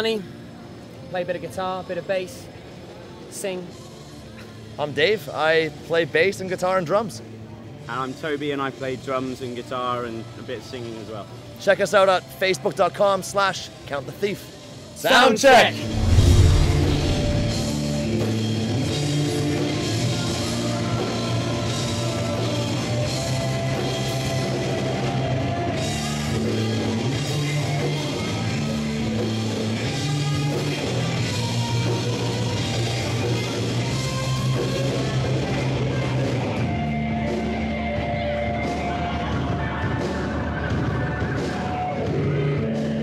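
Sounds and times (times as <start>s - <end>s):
bass: 14.8s - 43.0s
drums: 15.5s - 43.0s
electric guitar low chords: 15.8s - 18.4s.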